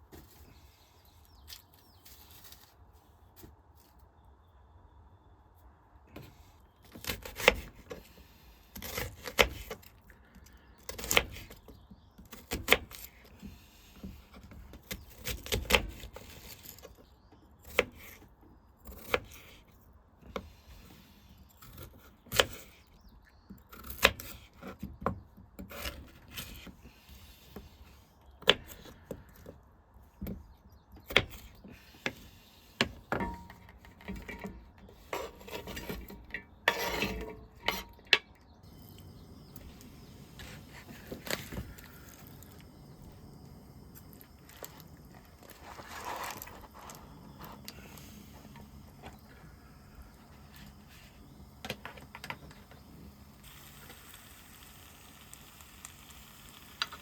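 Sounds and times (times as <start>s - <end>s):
wood rubbing and shuffling: 39.5s - 52.8s.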